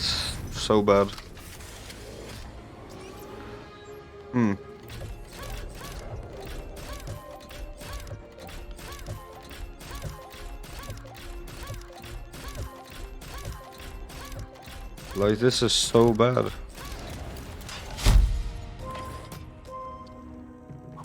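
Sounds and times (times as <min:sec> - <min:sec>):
game soundtrack music: 0:00.0 - 0:21.0
slot reels clunking and clicking: 0:04.8 - 0:20.1.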